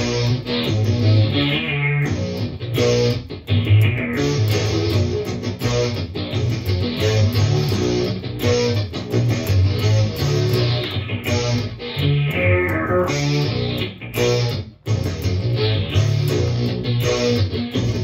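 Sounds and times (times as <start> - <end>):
electric guitar riffing: 0.0 - 18.0.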